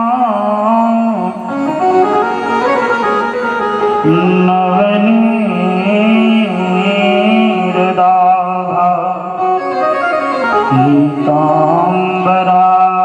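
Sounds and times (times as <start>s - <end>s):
person singing devotional verse: 0.0s - 2.3s, 4.0s - 10.0s, 10.6s - 13.0s
instrumental accompaniment: 0.0s - 13.0s.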